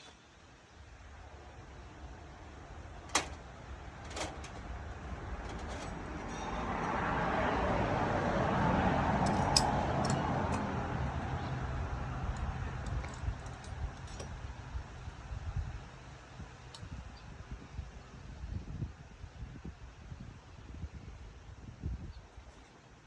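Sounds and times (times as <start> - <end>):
vehicle passing by: 3.5 - 14.8.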